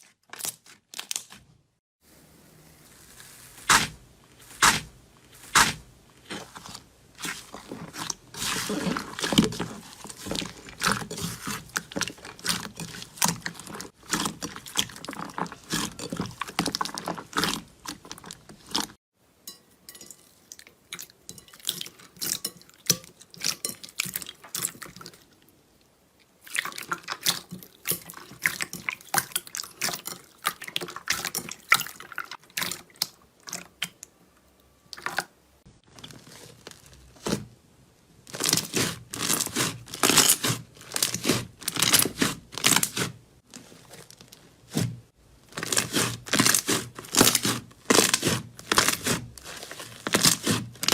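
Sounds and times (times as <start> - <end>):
slime squelching and popping: 3.4 - 19.0.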